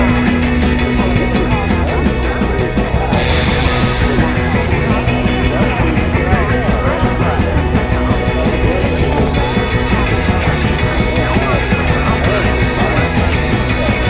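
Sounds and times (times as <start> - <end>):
loud dense noise music: 0.0 - 14.0.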